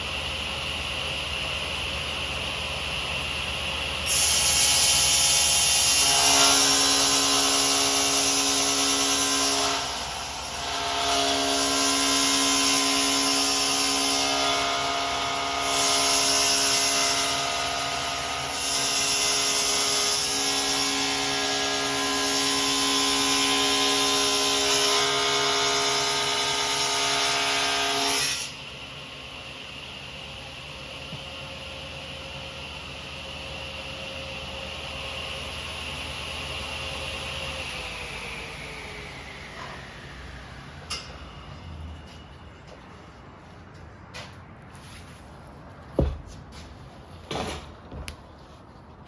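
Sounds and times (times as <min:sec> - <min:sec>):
table saw cutting foam panel: 0:04.0 - 0:28.7, 0:29.3 - 0:42.0.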